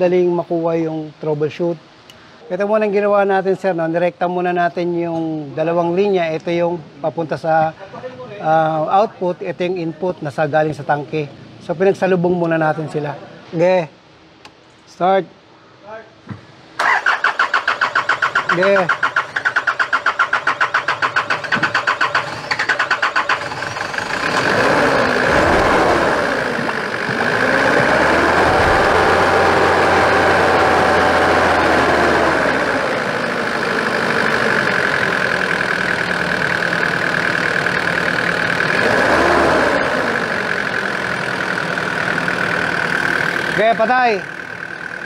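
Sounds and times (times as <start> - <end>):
diesel engine cranking on starter: 16.8 - 45.0
engine revving and running: 21.4 - 45.0.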